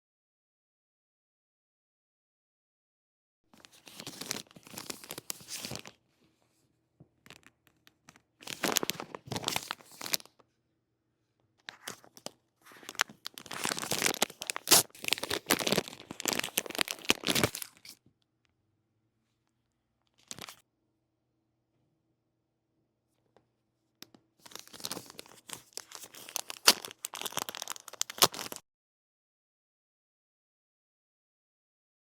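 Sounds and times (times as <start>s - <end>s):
packaging torn and crinkled: 3.6s - 5.9s, 8.4s - 10.3s, 11.7s - 18.0s, 20.2s - 20.6s, 24.4s - 28.6s.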